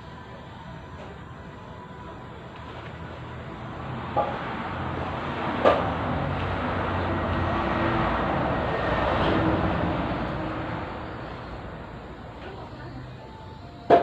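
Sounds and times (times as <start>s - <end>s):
motor vehicle passing: 2.6s - 12.9s.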